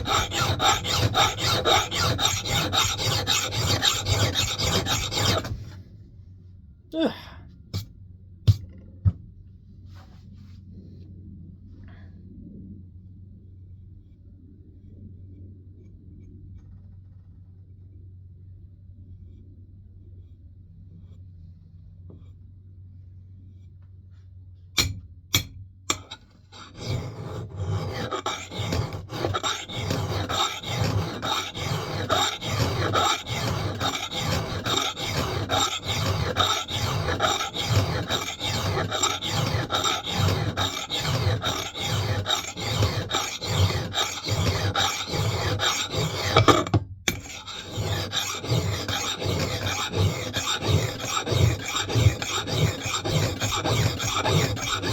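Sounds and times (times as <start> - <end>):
file rasping on axe head: 0.0 - 5.7, 24.8 - 54.9.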